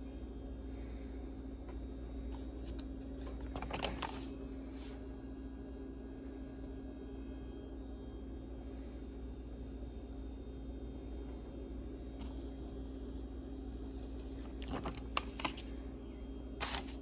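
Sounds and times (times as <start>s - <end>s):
steady low hum: 0.0s - 17.0s
paper page rustling: 2.3s - 5.0s, 12.2s - 15.8s, 16.6s - 17.0s.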